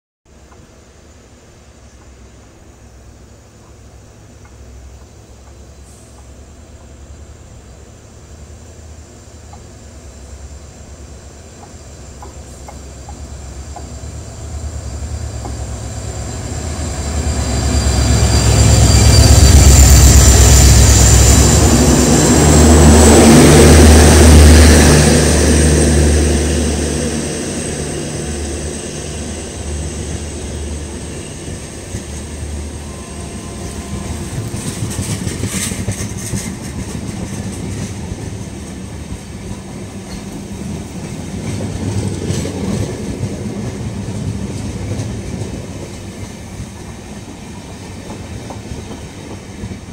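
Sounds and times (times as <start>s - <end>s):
locomotive engine rumble: 0.4s - 49.9s
train wheels clattering: 28.6s - 49.9s.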